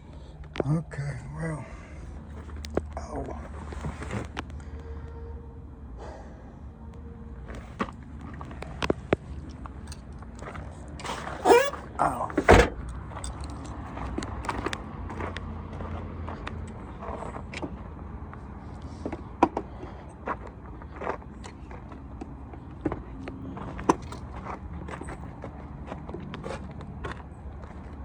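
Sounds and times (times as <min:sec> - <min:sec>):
low steady hum: 0:00.0 - 0:13.7
hands working on a car: 0:07.5 - 0:14.8
squeak: 0:11.1 - 0:12.2
heavy thump: 0:12.4 - 0:12.8.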